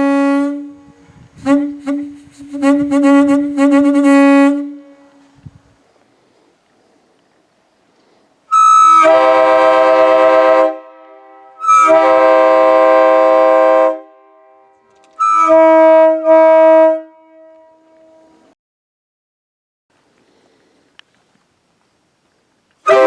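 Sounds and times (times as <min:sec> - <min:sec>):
train air horn blasts: 0:00.0 - 0:05.4, 0:08.5 - 0:18.4.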